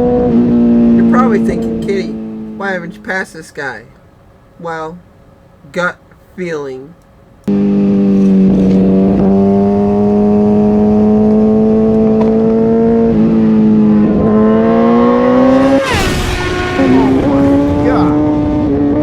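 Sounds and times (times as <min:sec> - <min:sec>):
motorcycle engine accelerating: 0:00.0 - 0:03.0, 0:07.5 - 0:19.0.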